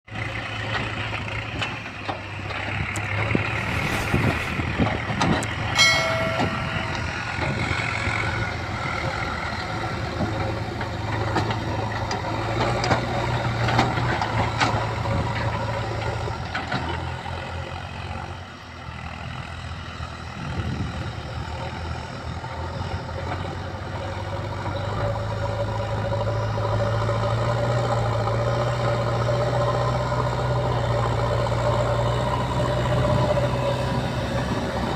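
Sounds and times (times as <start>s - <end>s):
diesel engine running: 0.1s - 34.9s
brief high tone: 5.8s - 8.1s.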